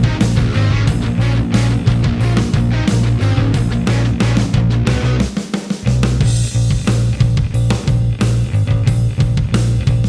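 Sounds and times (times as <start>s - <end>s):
electric guitar: 0.0s - 5.3s
drum beat: 0.0s - 8.2s
bass: 0.0s - 10.0s.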